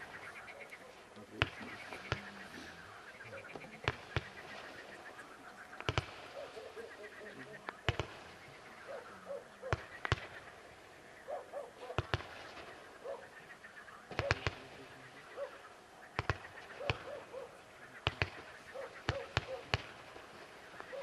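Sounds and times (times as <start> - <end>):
firework bangs: 7.8 - 8.4, 11.9 - 12.9.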